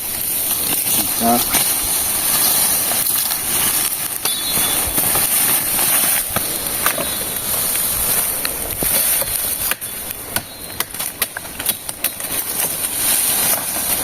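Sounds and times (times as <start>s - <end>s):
rustling foliage: 0.0s - 14.0s
steady high hiss: 0.0s - 14.0s
machete chopping stems: 8.8s - 12.7s.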